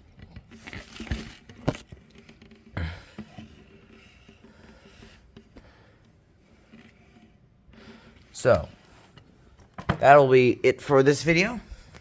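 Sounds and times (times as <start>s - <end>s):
plastic bin scraping and knocking: 9.6s - 10.2s.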